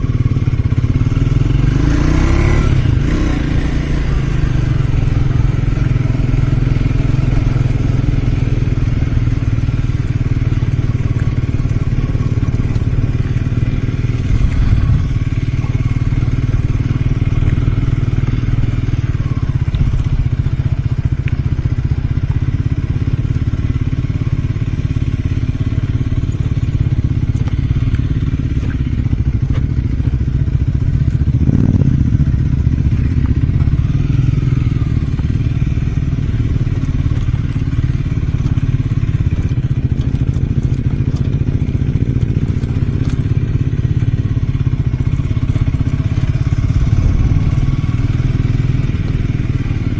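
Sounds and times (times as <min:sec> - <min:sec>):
motorcycle engine running: 0:00.0 - 0:49.9.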